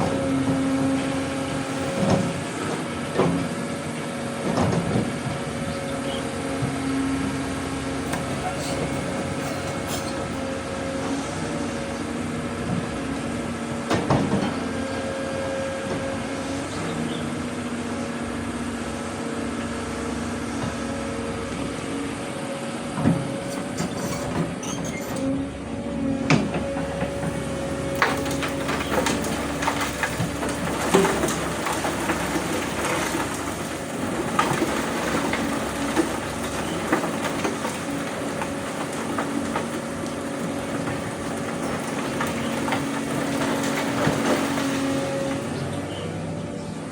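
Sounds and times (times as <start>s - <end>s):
excavator running: 0.0s - 46.9s
rock and dirt clattering: 4.4s - 17.3s, 23.0s - 25.3s, 26.3s - 46.4s.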